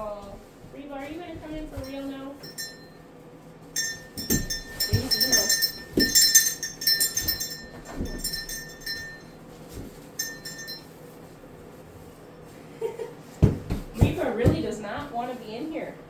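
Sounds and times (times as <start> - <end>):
metal collar jingling: 1.8 - 3.0, 3.8 - 9.3, 10.1 - 10.9
dull knocks: 13.4 - 15.0.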